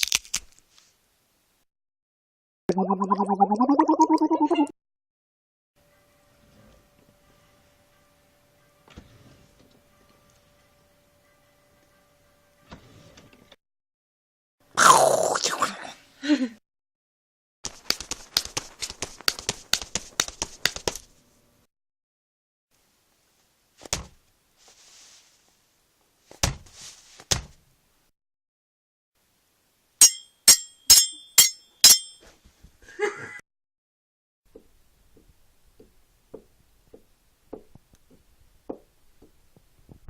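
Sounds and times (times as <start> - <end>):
sharp ringing metallic strikes: 30.0 - 32.2.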